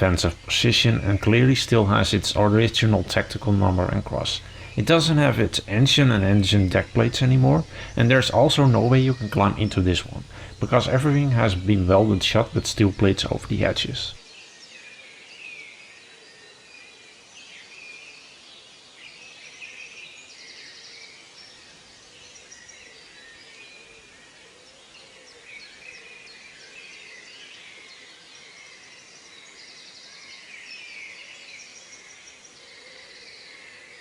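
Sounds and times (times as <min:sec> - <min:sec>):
small birds chirping: 0:00.0 - 0:14.2.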